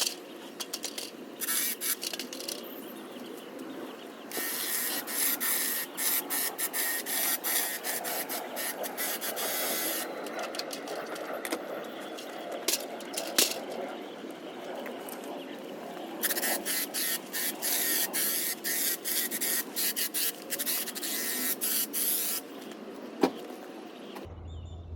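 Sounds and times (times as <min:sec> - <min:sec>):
hedge trimmer cutting foliage: 0:01.4 - 0:02.7, 0:04.3 - 0:10.8, 0:16.2 - 0:22.4.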